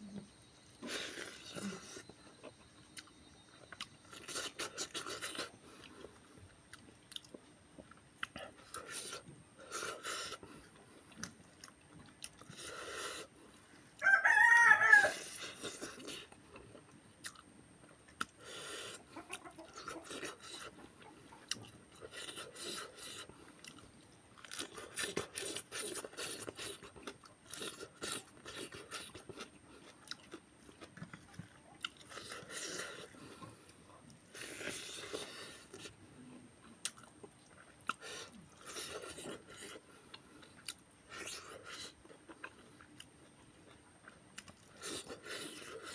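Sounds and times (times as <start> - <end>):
chewing food: 0.0 - 45.9
rooster crowing: 14.0 - 15.4.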